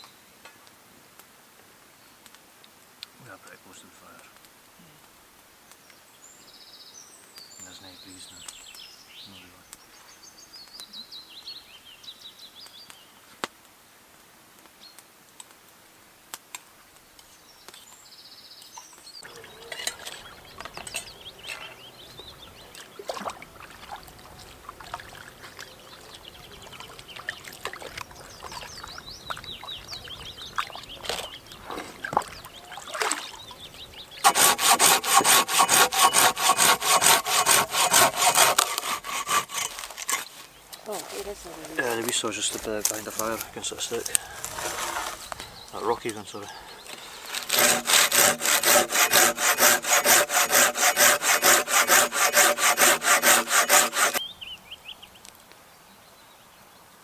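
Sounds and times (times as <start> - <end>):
hand saw cutting wood: 34.2 - 40.4, 44.4 - 45.2, 46.9 - 54.2
bird chirps: 54.2 - 55.2.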